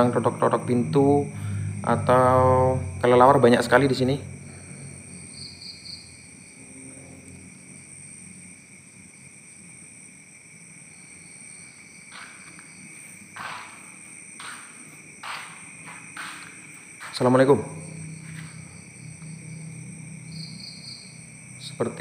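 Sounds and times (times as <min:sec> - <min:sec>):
night insects chorus: 0:00.0 - 0:22.0.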